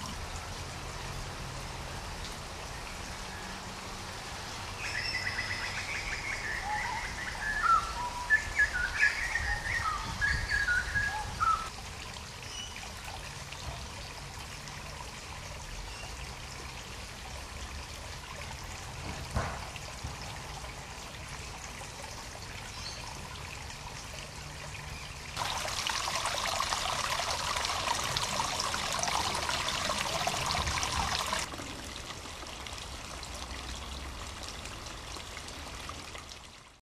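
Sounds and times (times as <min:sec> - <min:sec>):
water trickling from a waterfall: 0:00.0 - 0:36.8
bright splashing of falling water: 0:25.4 - 0:31.5.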